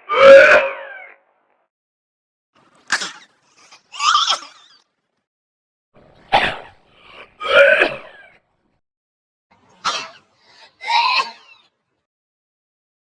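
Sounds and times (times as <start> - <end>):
person sneezing: 2.9 - 3.3, 6.3 - 6.8, 9.8 - 10.2.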